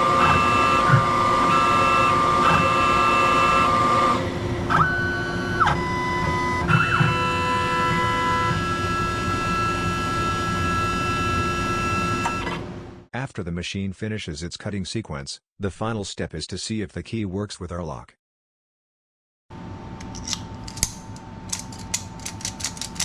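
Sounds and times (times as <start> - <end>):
carriage moving whines: 0.0 - 12.7
key machine motor whine: 0.0 - 12.8
stepper motor tones: 0.0 - 12.8.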